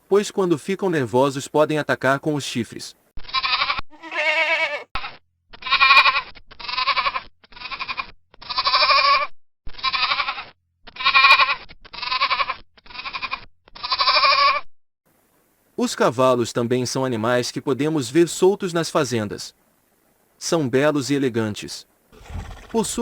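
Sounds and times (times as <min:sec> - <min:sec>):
goats bleating: 0:03.3 - 0:05.0.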